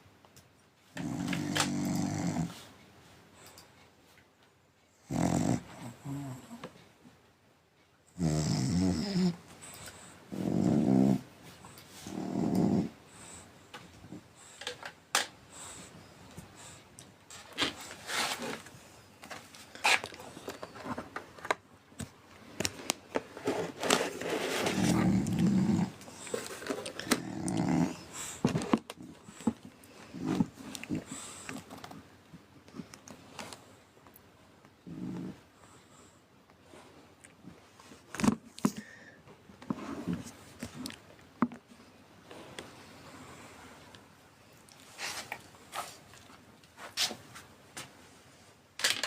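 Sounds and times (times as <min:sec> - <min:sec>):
dog snoring: 0:01.0 - 0:02.6, 0:05.0 - 0:06.6, 0:08.1 - 0:09.4, 0:10.0 - 0:11.3, 0:12.0 - 0:13.5, 0:24.7 - 0:31.6, 0:34.8 - 0:35.8.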